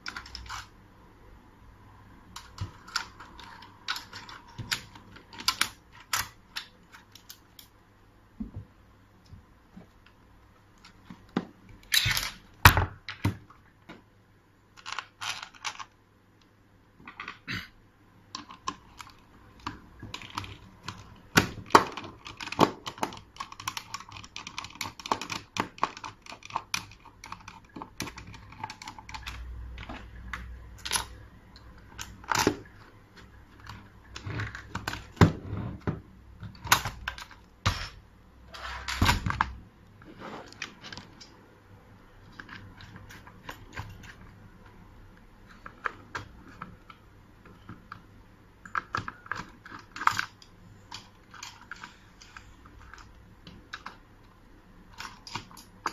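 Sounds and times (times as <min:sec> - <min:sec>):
door lock parts clicking and knocking: 0:18.4 - 0:35.4.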